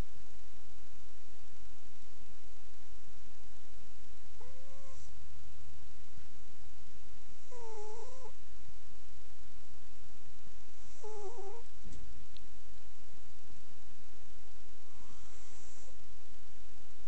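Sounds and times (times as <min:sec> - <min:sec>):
cat snoring: 0:04.4 - 0:05.2, 0:07.3 - 0:08.4, 0:10.8 - 0:11.7, 0:14.8 - 0:16.0.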